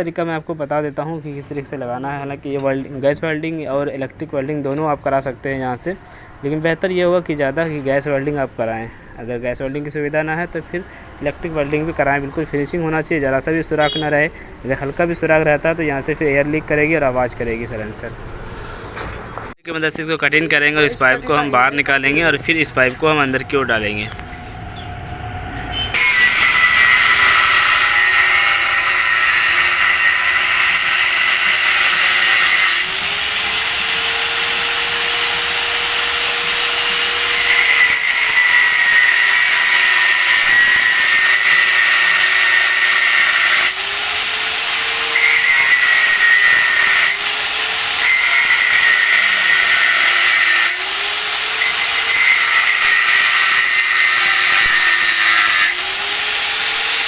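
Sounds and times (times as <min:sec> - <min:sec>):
angle grinder motor whine: 0:23.2 - 0:57.0
grinder cutting steel pipe: 0:25.6 - 0:57.0.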